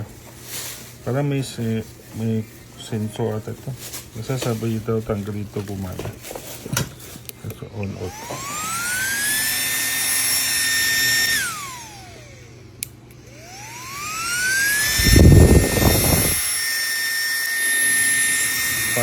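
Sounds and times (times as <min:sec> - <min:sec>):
electric fan whining: 0:00.0 - 0:19.0.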